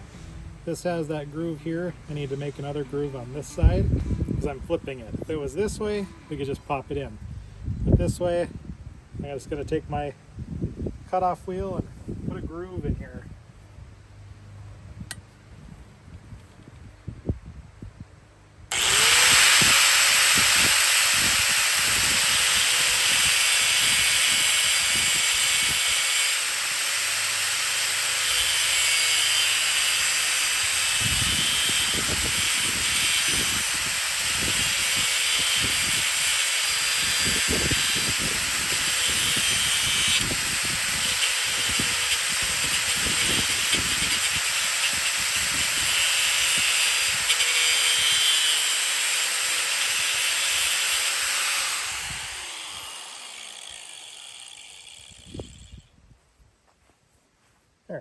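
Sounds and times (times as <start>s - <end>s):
cutoff wheel grinding metal: 0.0s - 7.0s, 18.7s - 55.8s.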